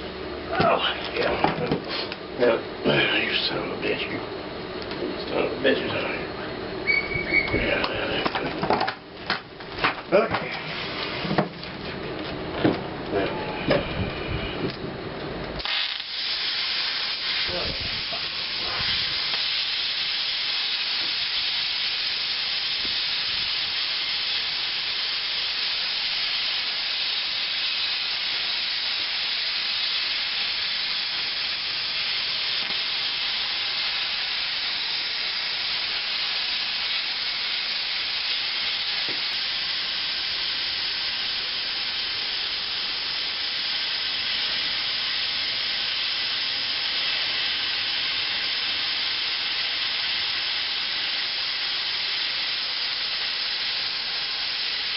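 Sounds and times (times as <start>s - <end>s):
plasma cutter hissing: 10.4s - 11.4s, 15.6s - 54.9s.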